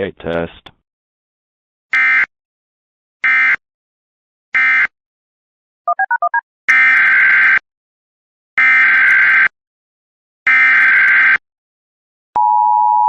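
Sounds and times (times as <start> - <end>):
touch-tone beeps: 5.9 - 6.4, 12.4 - 13.0.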